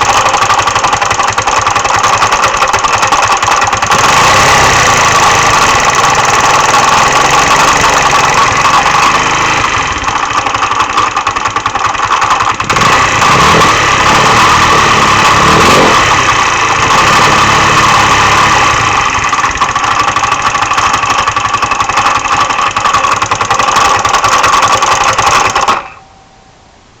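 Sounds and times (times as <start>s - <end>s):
knocking inside engine: 0.0s - 25.9s
scooter engine running: 0.0s - 26.0s.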